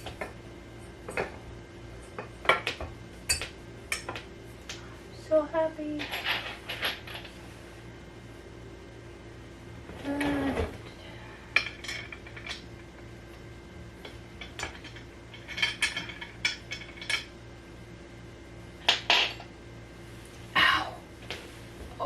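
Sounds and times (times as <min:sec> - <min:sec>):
furniture parts clinking and knocking: 0:11.6 - 0:12.7.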